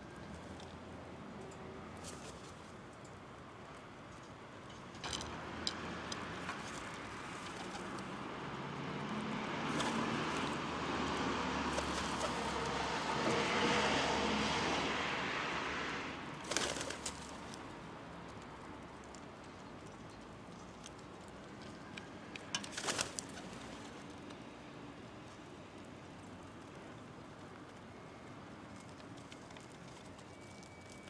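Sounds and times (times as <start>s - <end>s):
motor vehicle passing: 5.3s - 17.3s.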